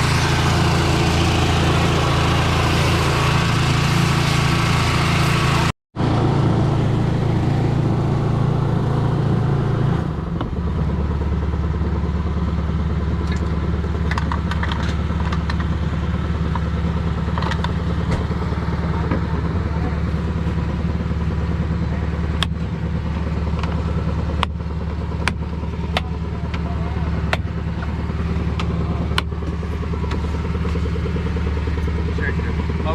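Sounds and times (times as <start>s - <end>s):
engine running: 0.0s - 32.9s
clicks and clanks: 13.2s - 15.7s.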